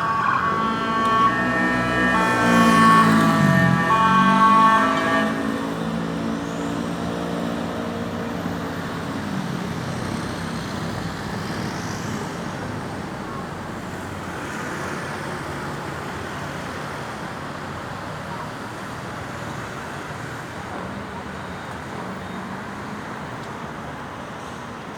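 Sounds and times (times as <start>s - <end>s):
emergency vehicle siren: 0.0s - 6.7s
road traffic: 0.0s - 15.2s.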